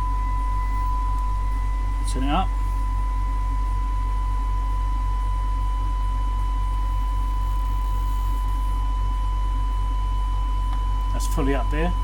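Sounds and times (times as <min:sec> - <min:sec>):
fainter higher tone: 0:00.0 - 0:05.0
steady test tone: 0:00.0 - 0:05.2
loud mains hum: 0:00.0 - 0:12.0
pulsing low buzz: 0:00.0 - 0:12.0.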